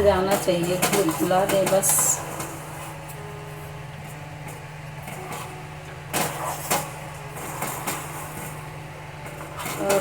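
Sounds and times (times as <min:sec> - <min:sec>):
low mechanical hum: 0:00.0 - 0:10.0.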